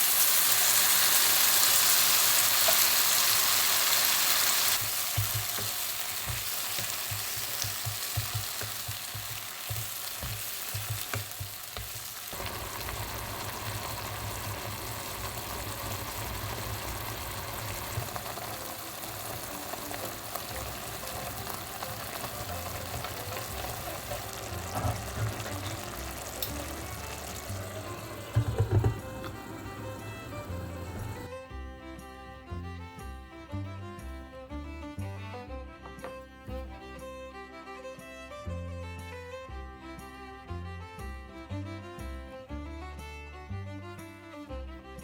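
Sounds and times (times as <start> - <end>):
food sizzling in a pan: 0.0 - 31.3.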